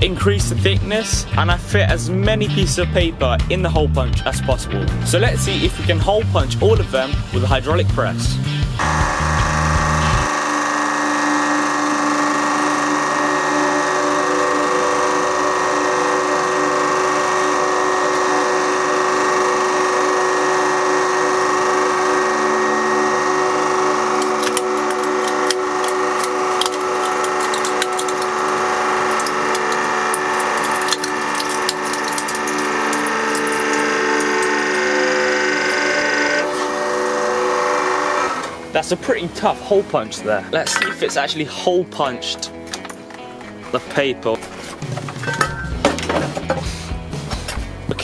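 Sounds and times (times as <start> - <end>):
hydraulic pump motor humming: 0.0 - 48.0
paper stack cracking under press: 24.1 - 34.6.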